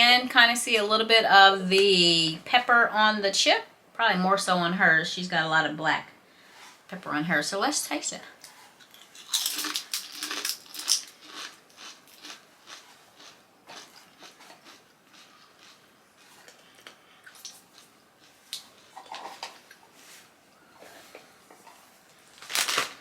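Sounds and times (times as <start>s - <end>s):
crunching and chewing potato chips: 8.4s - 19.7s.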